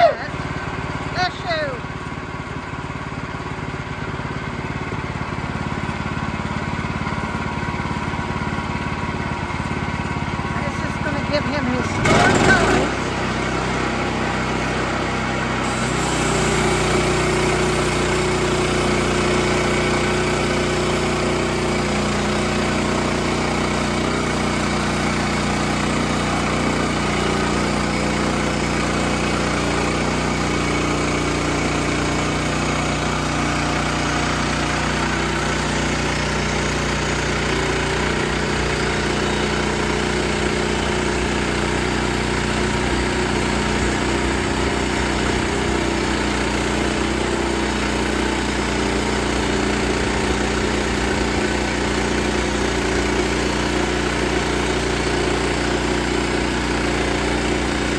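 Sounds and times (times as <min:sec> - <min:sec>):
sawmill engine running: 0:00.0 - 0:57.9
saw blade cutting log: 0:10.6 - 0:57.9.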